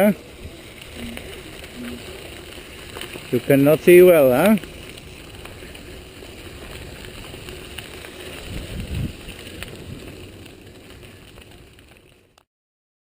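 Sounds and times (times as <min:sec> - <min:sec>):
bike tyres on muddy road: 0:00.0 - 0:12.5
wind over microphone: 0:04.3 - 0:11.8.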